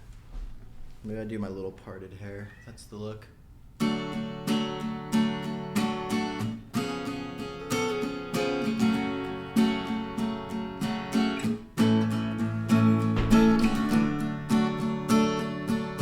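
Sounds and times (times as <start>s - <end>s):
acoustic guitar strumming chords: 3.8s - 16.0s.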